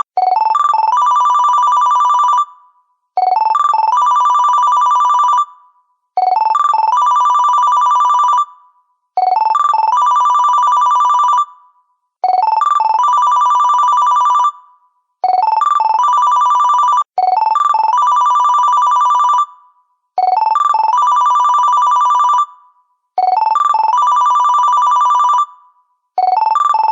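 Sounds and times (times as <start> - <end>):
phone ringtone: 0.0 - 26.9.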